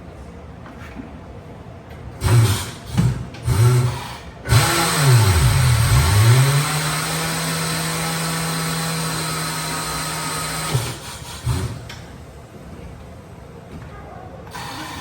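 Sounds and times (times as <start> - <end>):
motor whirring: 2.2 - 11.9.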